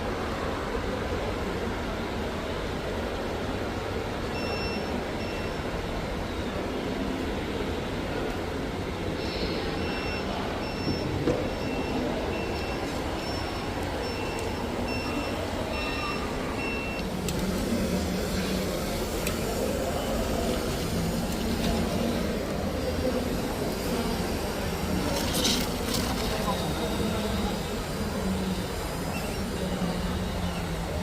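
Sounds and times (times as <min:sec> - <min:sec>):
steady background din: 0:04.7 - 0:31.0
reversing beeper: 0:09.7 - 0:17.0.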